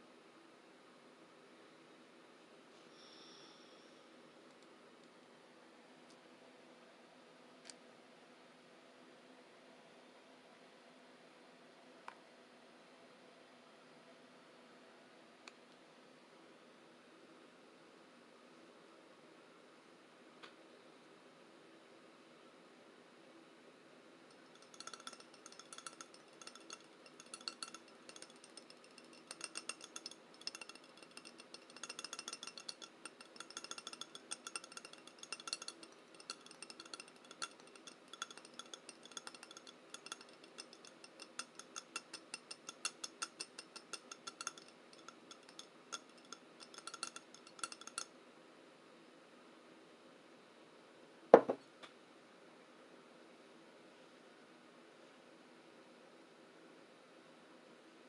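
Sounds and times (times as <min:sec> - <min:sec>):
rapid tapping on a bowl: 0:24.3 - 0:48.1.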